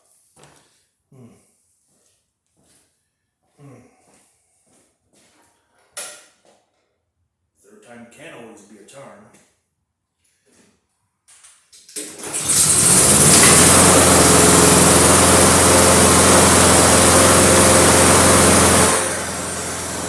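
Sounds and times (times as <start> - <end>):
mower engine pull-started: 12.0 - 20.0.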